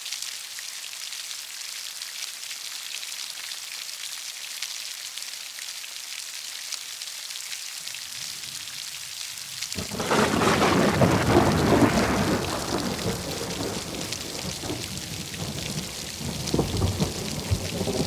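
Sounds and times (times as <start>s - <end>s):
heavy rain falling: 8.0s - 18.0s
distant thunder rumble: 9.8s - 18.0s.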